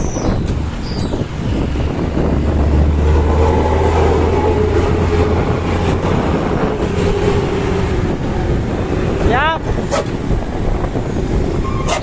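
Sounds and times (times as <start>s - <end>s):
diesel truck engine rumbling: 0.0s - 12.0s
steady high tone: 2.5s - 9.1s.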